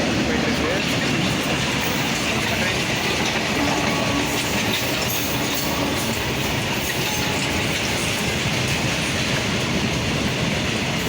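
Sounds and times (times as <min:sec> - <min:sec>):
train wheels rumbling on rails: 0:00.0 - 0:11.0.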